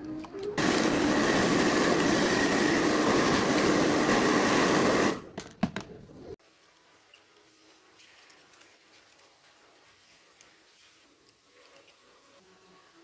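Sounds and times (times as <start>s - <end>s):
electric fan whirring: 0.6s - 5.3s.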